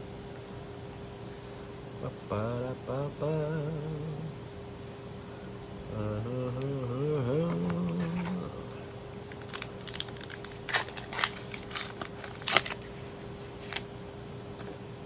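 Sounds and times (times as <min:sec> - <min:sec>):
foil wrapper crinkling: 0:07.8 - 0:08.4, 0:09.2 - 0:13.9.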